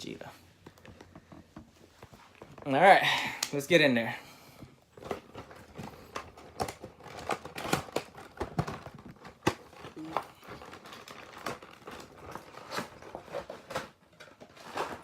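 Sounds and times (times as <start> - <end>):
plastic packaging crinkling: 4.8 - 15.0.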